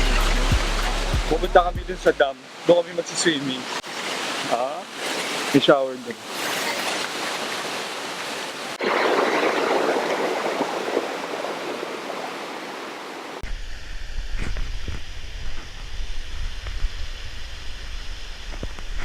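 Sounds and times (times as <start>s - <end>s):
waterfall rushing: 0.0s - 13.4s.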